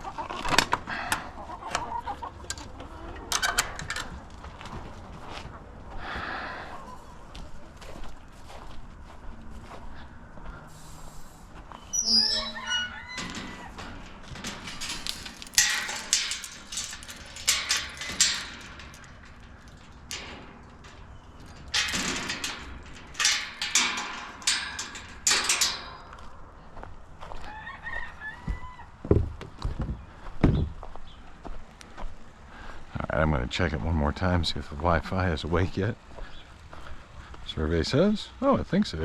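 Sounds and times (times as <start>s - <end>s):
chickens clucking: 0.0s - 8.6s.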